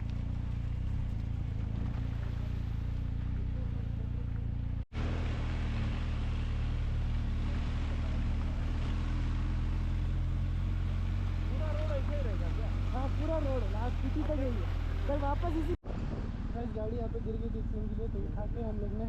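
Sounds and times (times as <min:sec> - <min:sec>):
motorcycle engine running: 0:00.0 - 0:19.0
road noise: 0:00.0 - 0:19.0.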